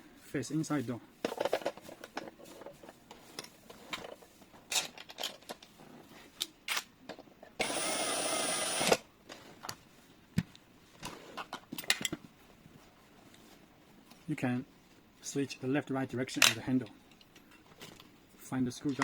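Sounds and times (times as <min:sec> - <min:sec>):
power screwdriver whirring: 0:07.6 - 0:09.0.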